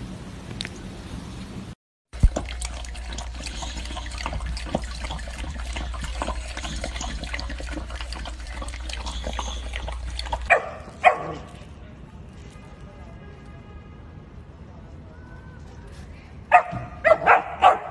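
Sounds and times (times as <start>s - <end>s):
running water splashing: 2.1s - 11.7s.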